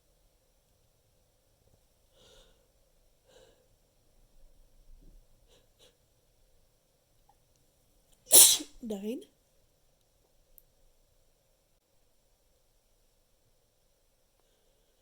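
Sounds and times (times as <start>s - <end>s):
faint breaths: 2.1s - 3.9s, 14.4s - 15.0s.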